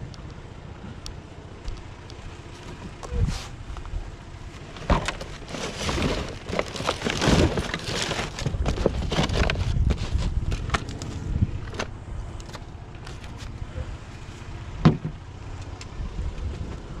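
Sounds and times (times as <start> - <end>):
objects clattering and rustling: 4.6 - 13.6.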